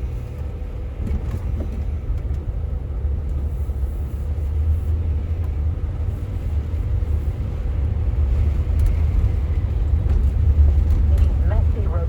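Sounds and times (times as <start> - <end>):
car road rumble and tyre noise: 0.0 - 12.0.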